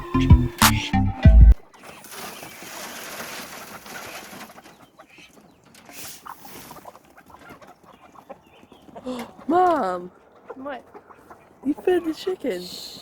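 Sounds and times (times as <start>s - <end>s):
background music: 0.0s - 1.6s
farmyard birds calling: 0.0s - 13.0s.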